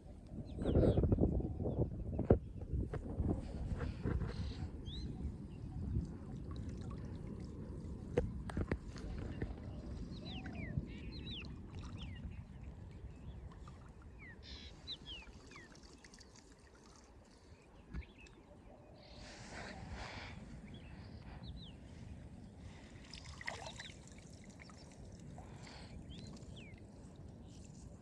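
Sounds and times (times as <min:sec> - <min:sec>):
water sloshing and splashing: 0:13.3 - 0:18.4, 0:22.7 - 0:27.7
bird chirps: 0:14.2 - 0:15.8.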